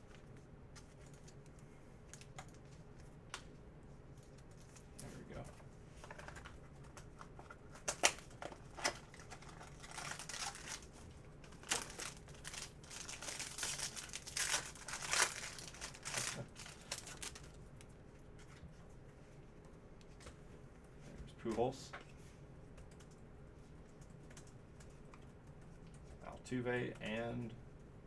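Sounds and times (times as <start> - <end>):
wrapper crinkling: 7.8 - 17.6.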